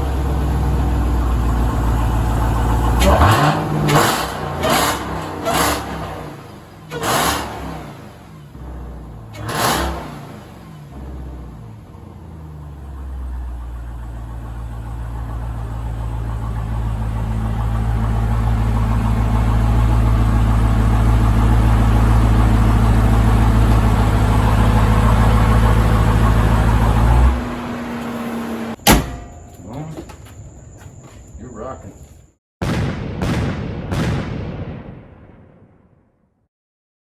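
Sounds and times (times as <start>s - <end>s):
car engine revving steadily: 0.0s - 28.9s.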